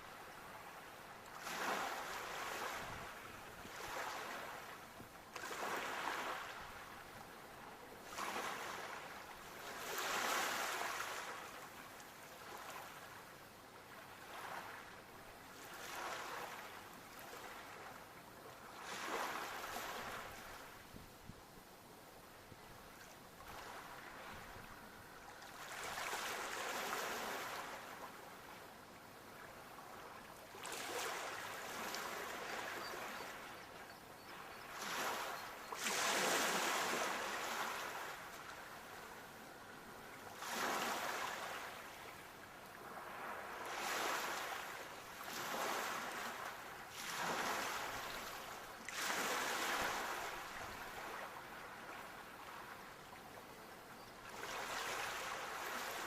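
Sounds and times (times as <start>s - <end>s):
sea waves breaking: 30.6s - 38.2s, 42.8s - 51.8s.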